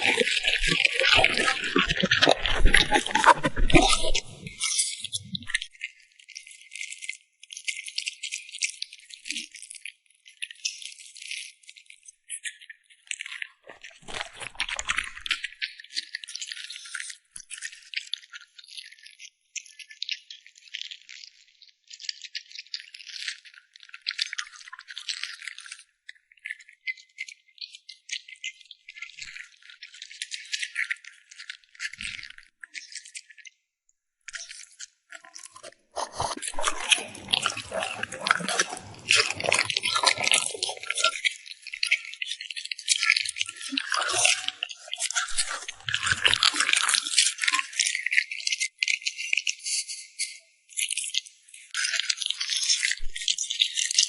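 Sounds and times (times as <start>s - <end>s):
dog crunching food: 0.0s - 5.7s, 13.7s - 15.3s, 35.3s - 41.9s, 43.0s - 47.9s.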